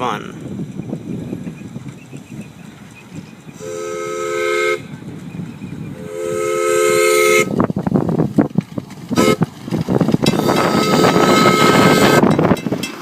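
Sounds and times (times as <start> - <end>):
train horn blasts: 3.6 - 4.9, 6.0 - 7.6, 9.2 - 9.4, 10.3 - 12.3
train wheels clattering: 7.5 - 13.0.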